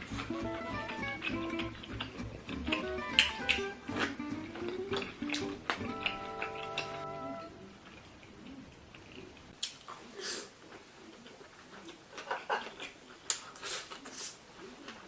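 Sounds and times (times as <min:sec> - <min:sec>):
crunching clicks: 0:00.0 - 0:07.1
music: 0:00.0 - 0:07.6
person chewing: 0:00.0 - 0:15.0.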